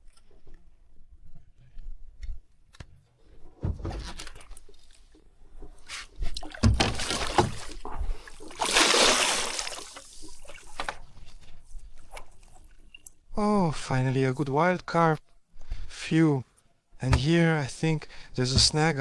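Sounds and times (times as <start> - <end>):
water splashing and sloshing: 3.2 - 13.3
fish thrashing at the surface: 6.3 - 10.8.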